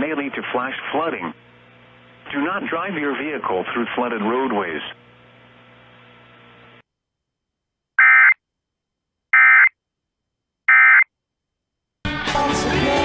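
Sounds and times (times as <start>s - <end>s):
faint steady hum: 0.0s - 7.4s.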